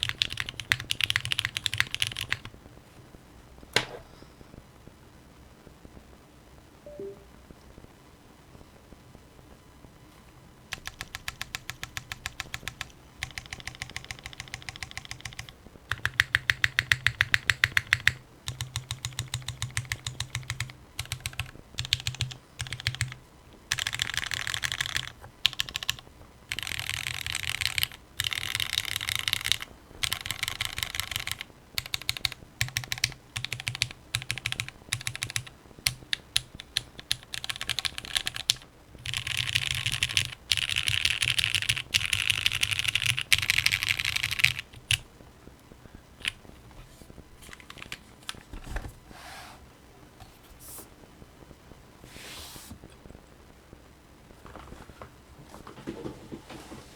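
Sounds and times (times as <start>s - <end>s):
typing on mechanical keyboard: 0.0s - 2.5s, 10.7s - 45.0s, 47.5s - 48.4s.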